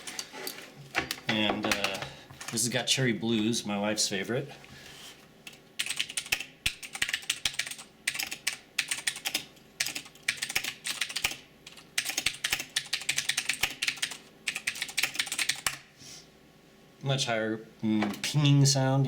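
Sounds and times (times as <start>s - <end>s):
clicky keyboard typing: 5.5s - 15.8s.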